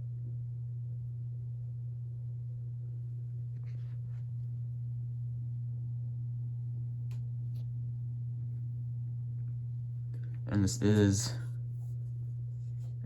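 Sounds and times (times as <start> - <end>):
ceiling fan motor hum: 0.0 - 13.0.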